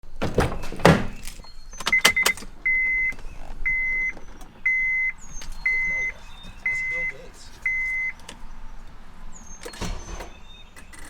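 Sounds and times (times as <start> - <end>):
quick clicks: 1.2 - 4.5
car warning chime beeping: 1.4 - 11.0.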